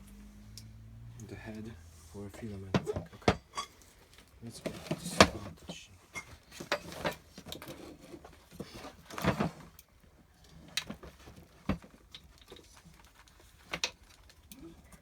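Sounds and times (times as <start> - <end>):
parts clattering: 2.4 - 9.8.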